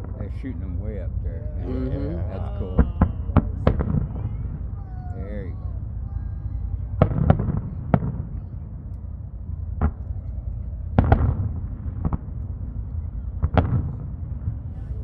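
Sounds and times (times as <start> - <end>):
low background rumble: 0.0 - 15.0.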